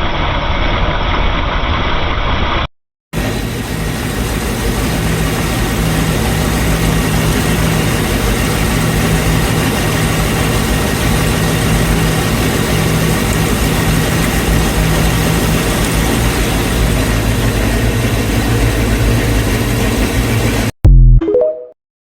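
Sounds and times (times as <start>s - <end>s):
boat engine idling: 3.2s - 20.7s.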